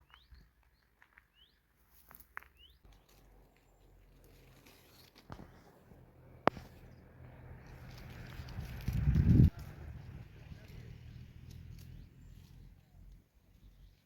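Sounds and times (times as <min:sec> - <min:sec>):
bird chirping: 0:10.6 - 0:14.0.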